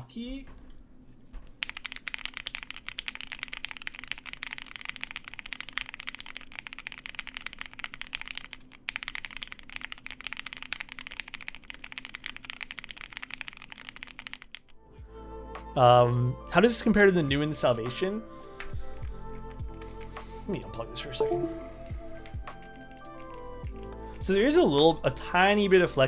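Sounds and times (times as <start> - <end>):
fast typing on mechanical keyboard: 1.6 - 14.7.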